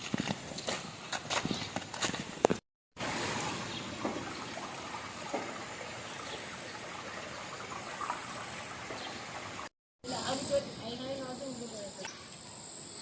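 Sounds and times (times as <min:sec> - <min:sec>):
flowing water rushing: 0:03.0 - 0:09.7.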